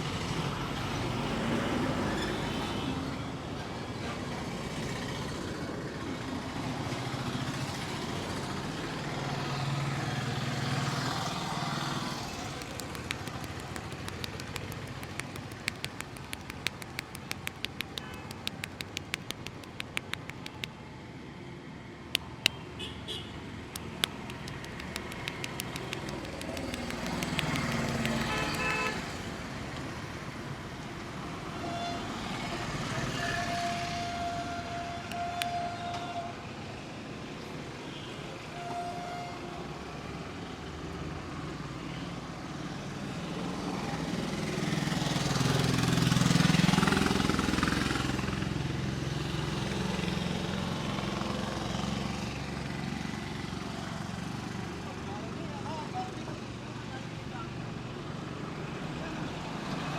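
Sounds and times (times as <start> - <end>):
sharp clicks: 12.3 - 20.8, 22.2 - 22.6, 23.8 - 29.0
vehicles passing: 22.2 - 29.6
car horn: 28.2 - 29.0.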